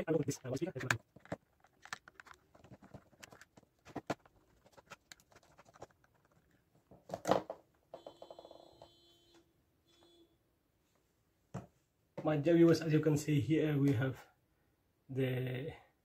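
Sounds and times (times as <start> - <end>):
plastic casing clicks and snaps: 0.8 - 4.2
electronic ringing tone: 8.0 - 10.2.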